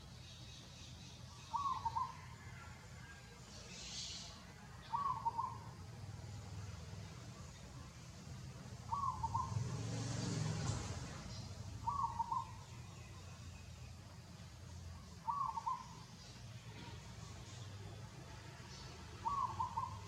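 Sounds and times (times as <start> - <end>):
bird calling: 0.6 - 2.6, 3.7 - 5.8, 8.9 - 9.7, 11.3 - 13.3, 15.0 - 17.0, 18.7 - 20.0.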